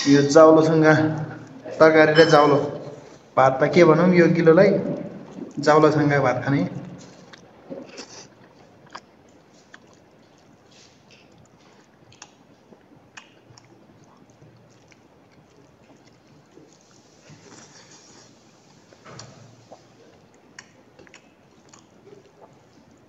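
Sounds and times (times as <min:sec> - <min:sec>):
wet chewing and lip smacks: 0:01.1 - 0:01.8, 0:04.8 - 0:05.7, 0:06.8 - 0:23.0.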